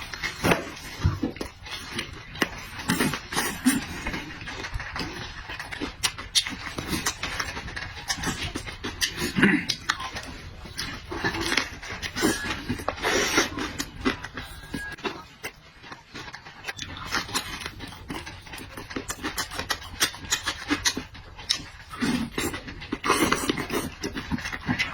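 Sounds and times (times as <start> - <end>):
man chewing and smacking lips: 0.0 - 24.9
grunt: 9.3 - 9.8.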